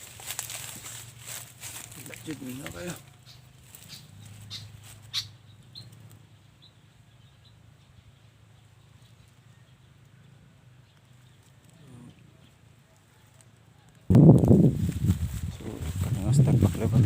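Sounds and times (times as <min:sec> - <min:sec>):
faint bird chirps: 0:03.0 - 0:14.0.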